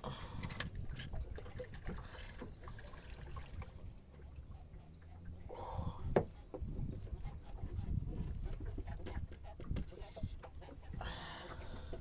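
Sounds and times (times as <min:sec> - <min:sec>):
knocks and clatter in boat: 0:00.3 - 0:12.0
water trickling: 0:00.6 - 0:06.5.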